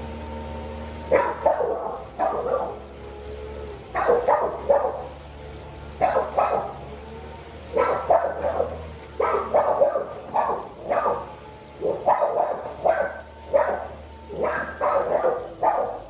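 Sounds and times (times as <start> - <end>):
dog barking: 1.1 - 2.9, 3.9 - 5.2, 6.0 - 6.9, 7.7 - 16.0.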